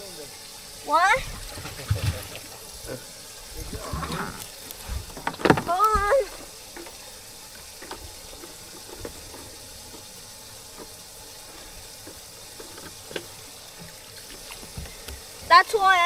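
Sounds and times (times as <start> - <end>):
trickling water: 0.0 - 16.0.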